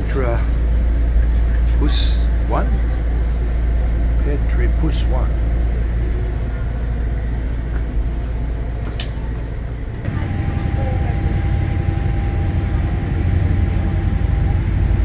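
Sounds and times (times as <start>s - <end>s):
ferry engines rumbling: 0.0s - 15.0s
faint steady whine: 10.0s - 15.0s.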